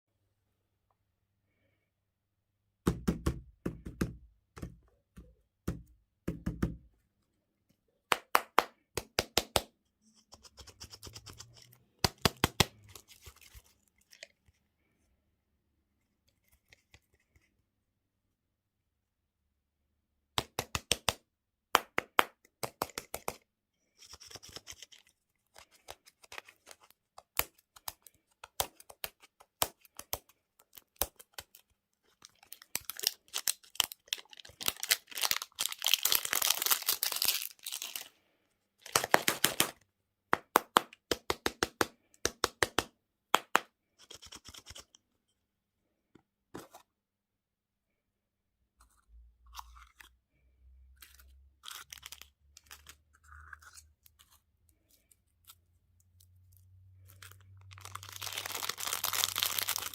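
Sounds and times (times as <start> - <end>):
food packaging clicking and tapping: 21.8 - 23.4
packaging tearing and crinkling: 32.2 - 38.1, 51.6 - 53.0, 57.1 - 59.9.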